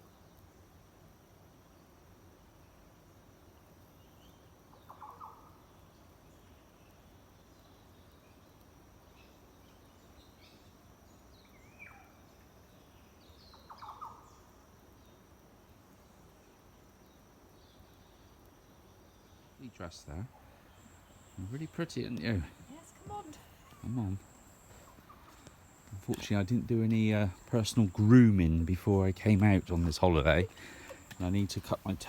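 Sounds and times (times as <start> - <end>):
high insect drone: 8.8 - 32.0
birds calling faintly: 17.1 - 32.0
faint high chirps: 20.4 - 32.0.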